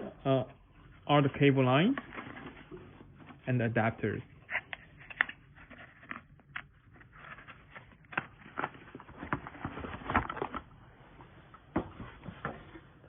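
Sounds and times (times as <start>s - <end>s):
plastic packaging rustling: 5.5s - 10.8s.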